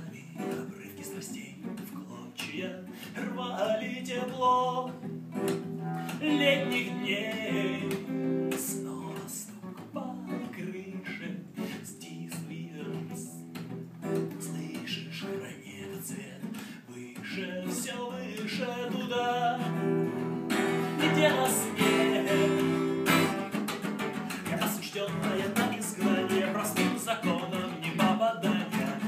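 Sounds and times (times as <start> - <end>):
acoustic guitar strumming: 0.0 - 29.0
person singing: 5.7 - 13.5, 14.2 - 23.6, 24.3 - 29.0.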